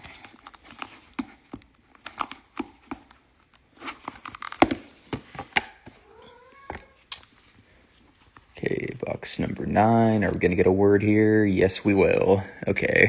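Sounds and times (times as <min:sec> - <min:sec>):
packaging tearing and crinkling: 0:00.0 - 0:05.8.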